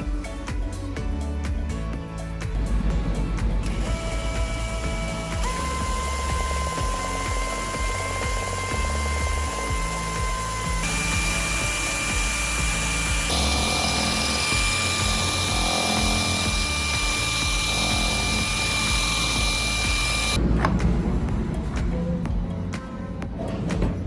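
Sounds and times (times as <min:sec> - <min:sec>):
clicks: 0:03.6 - 0:20.4
power tool whining: 0:03.6 - 0:20.4.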